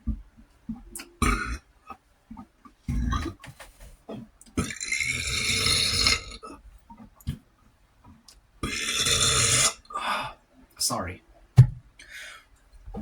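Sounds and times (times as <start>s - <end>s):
man burping: 1.2s - 1.6s.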